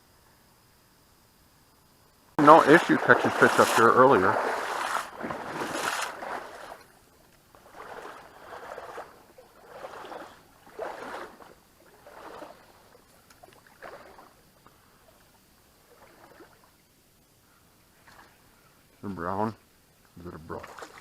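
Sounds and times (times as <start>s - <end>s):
water splashing and sloshing: 2.4s - 16.8s, 20.5s - 21.0s.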